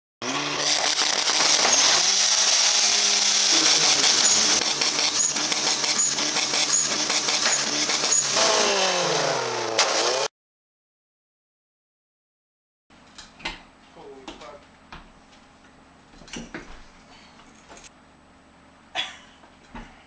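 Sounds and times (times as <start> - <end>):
car engine revving: 0.2 - 10.3.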